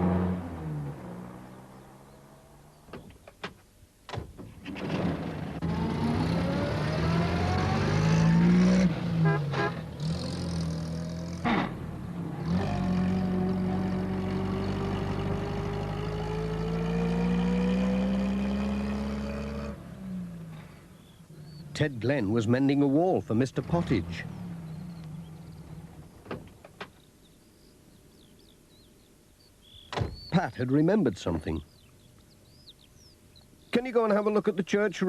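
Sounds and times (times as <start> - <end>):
van engine revving: 0.0 - 3.0, 4.6 - 26.8.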